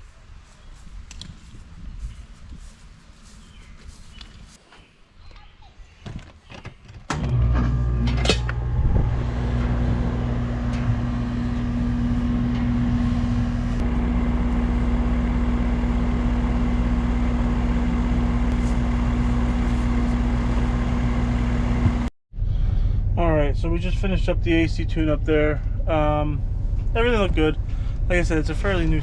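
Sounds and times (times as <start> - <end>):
machine humming: 7.1 - 22.1.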